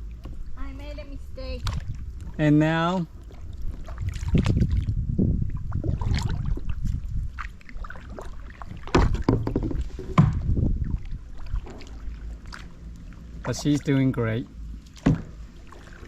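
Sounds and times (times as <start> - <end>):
low microphone rumble: 0.0 - 16.0
canoe paddles splashing in water: 1.2 - 16.0
paddle knocks against boat: 8.6 - 10.7, 14.8 - 15.5.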